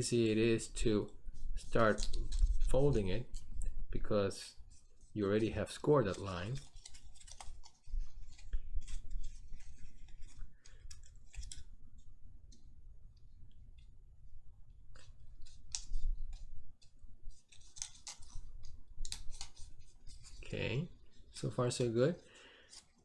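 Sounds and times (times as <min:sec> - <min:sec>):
paper crinkles and clicks: 0:01.6 - 0:03.5, 0:04.8 - 0:12.6, 0:14.9 - 0:23.0.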